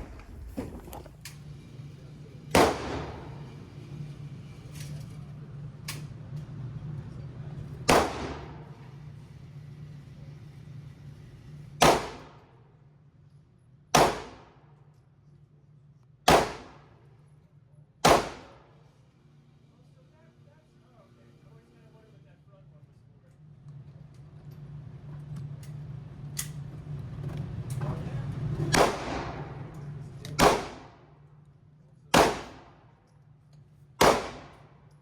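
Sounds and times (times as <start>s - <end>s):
steady low hum: 0.0s - 35.0s
gunshots with echo: 2.5s - 3.5s, 7.9s - 8.7s, 11.8s - 12.4s, 14.0s - 14.5s, 18.0s - 18.6s, 28.7s - 29.7s, 30.4s - 31.0s, 32.1s - 32.8s, 34.0s - 34.6s.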